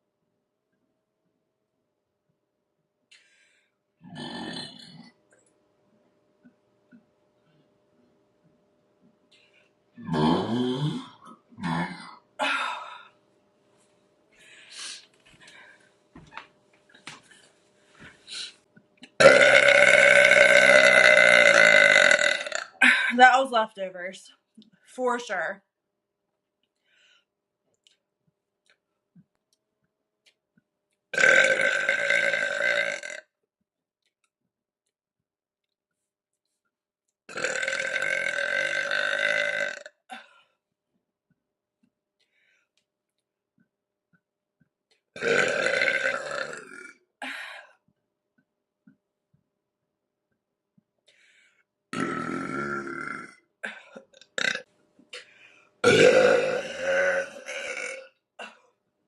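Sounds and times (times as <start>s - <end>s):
woman burping: 4.0s - 5.2s, 10.0s - 13.1s, 19.1s - 23.3s, 31.1s - 33.3s, 37.3s - 40.4s, 45.2s - 47.4s, 51.9s - 54.7s, 55.8s - 58.8s.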